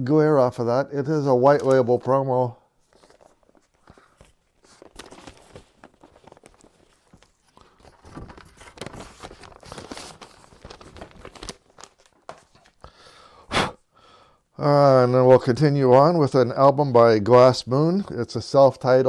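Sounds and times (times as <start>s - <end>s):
paper and card rustling: 1.3s - 12.8s.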